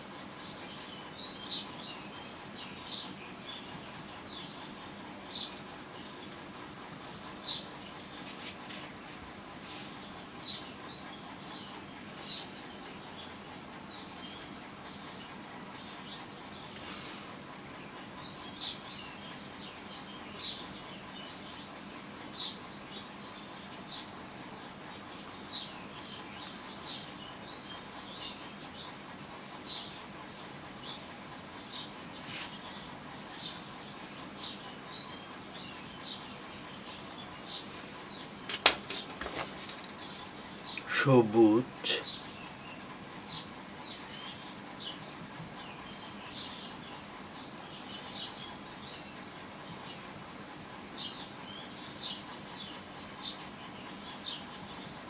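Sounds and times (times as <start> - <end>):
bird chirping: 17.7 - 55.0.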